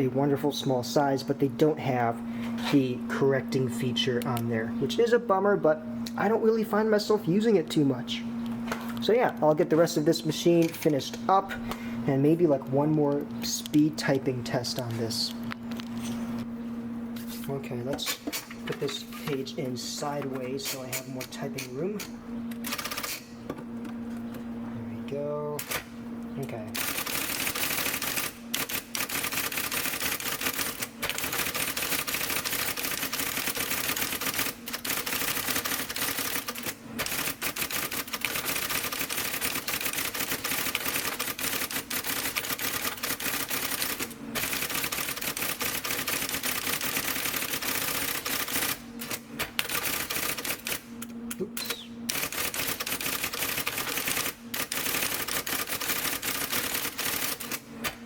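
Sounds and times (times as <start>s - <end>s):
typewriter motor hum: 8.4s - 16.5s, 17.2s - 24.4s, 25.5s - 58.0s
typewriter keystroke clatter: 22.6s - 23.3s, 25.6s - 25.8s, 26.8s - 50.8s, 51.6s - 58.0s.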